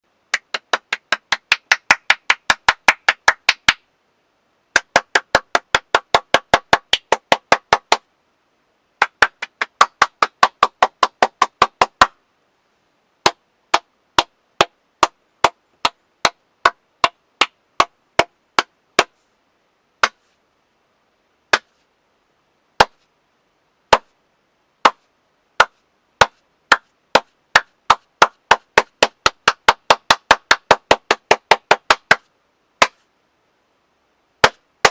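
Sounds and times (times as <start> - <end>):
person clapping hands: 0.3 - 3.8, 4.8 - 8.0, 9.0 - 12.2, 13.3 - 16.4, 27.6 - 32.2, 34.4 - 34.9.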